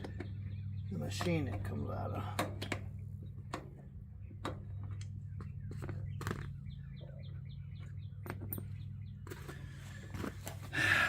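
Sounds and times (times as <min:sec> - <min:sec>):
steady low hum: 0:00.0 - 0:11.0
faint bird chirps: 0:04.2 - 0:10.0.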